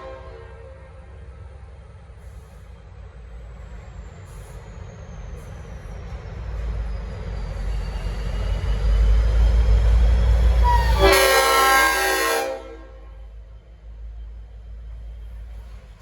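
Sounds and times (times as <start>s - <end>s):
locomotive air horn blast: 0.0s - 0.9s, 10.6s - 13.3s
low rumble of train: 0.0s - 16.0s.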